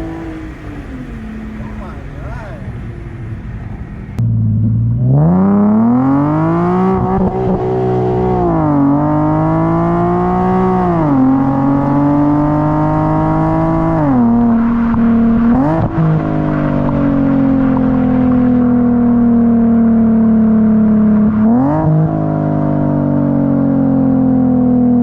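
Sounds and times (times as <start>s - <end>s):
car exhaust accelerating hard: 0.0s - 25.0s.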